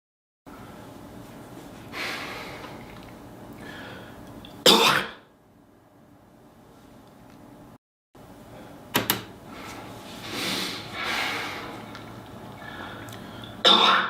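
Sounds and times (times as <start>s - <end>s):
person coughing: 4.6s - 5.3s, 13.6s - 14.0s
noisy breath in throat: 9.5s - 11.9s.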